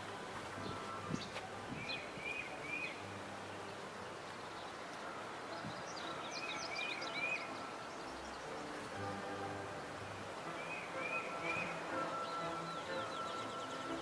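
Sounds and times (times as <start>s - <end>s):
outdoor background hiss: 0.0s - 14.0s
songbird singing: 0.0s - 14.0s
higher bird chirps: 5.5s - 14.0s.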